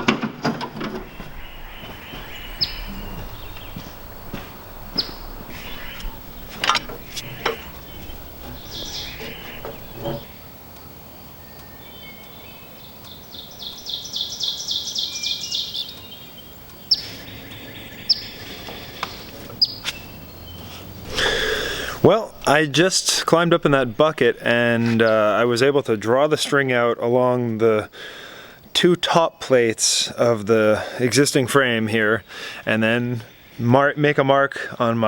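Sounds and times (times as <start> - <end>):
knocks and clicks: 0.0 - 10.5
songbird trilling and chirping: 1.0 - 25.4.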